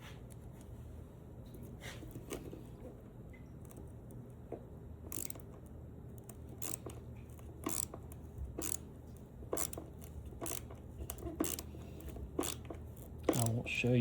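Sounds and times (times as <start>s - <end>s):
hand ratchet clicking: 5.1s - 5.6s, 6.2s - 8.8s, 9.5s - 13.7s.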